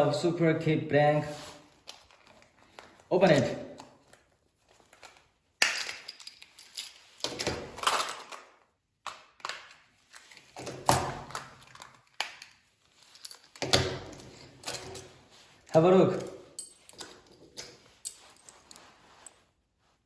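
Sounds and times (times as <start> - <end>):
metal keys clinking and rattling: 5.6 - 8.5, 10.6 - 15.2, 16.1 - 19.3.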